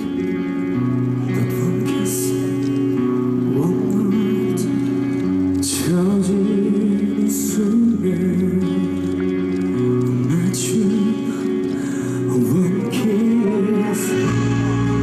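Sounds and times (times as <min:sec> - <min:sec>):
man singing: 0:01.2 - 0:15.0
instrumental accompaniment: 0:08.5 - 0:15.0.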